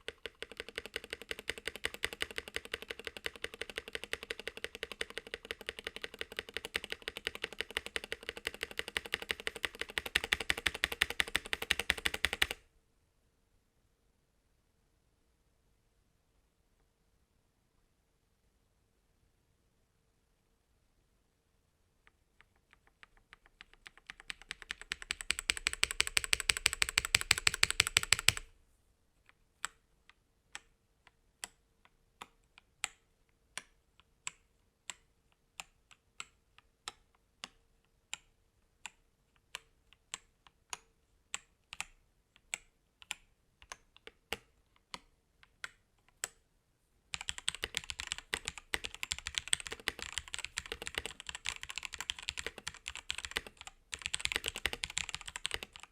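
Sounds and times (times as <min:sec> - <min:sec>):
mechanical keyboard typing: 0:00.0 - 0:12.6, 0:22.4 - 0:28.5, 0:47.1 - 0:55.9.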